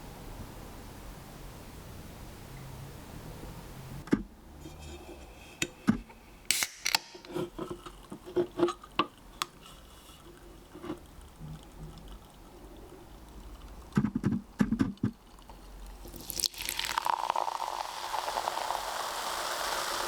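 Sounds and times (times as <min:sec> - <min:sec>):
carbonated drink fizzing: 0:09.2 - 0:20.0.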